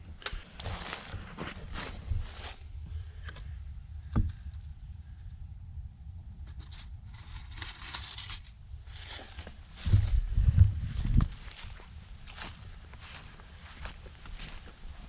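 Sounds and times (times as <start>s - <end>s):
low steady rumble: 0.0s - 15.0s
scratchy rustle: 6.5s - 10.3s.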